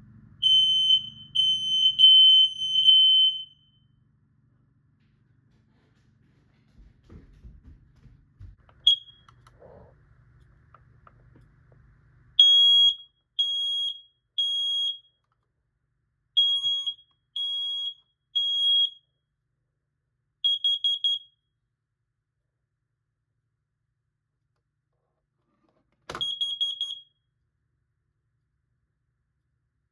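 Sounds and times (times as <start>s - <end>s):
smoke detector beeping: 0.4s - 3.8s, 8.7s - 9.4s, 12.4s - 15.2s, 16.4s - 19.1s, 20.4s - 21.4s, 26.1s - 27.2s.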